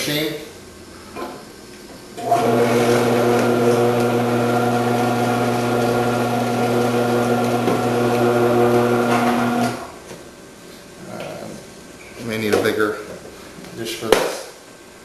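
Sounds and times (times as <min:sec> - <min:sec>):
vegetable cutter motor humming: 0:02.2 - 0:09.9.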